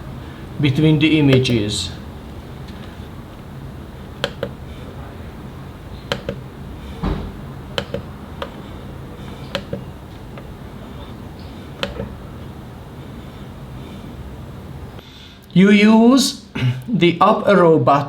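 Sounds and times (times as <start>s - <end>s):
printer buttons clicking: 1.3s - 1.6s, 4.2s - 4.6s, 6.0s - 6.5s, 7.7s - 8.6s, 9.3s - 10.6s, 11.8s - 12.2s
dull knock: 7.0s - 8.0s.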